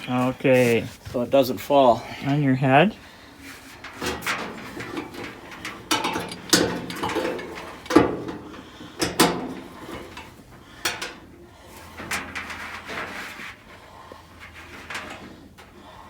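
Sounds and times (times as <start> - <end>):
metal rubbing: 3.4 - 11.2
sheet metal clunks and knocks: 3.9 - 11.2.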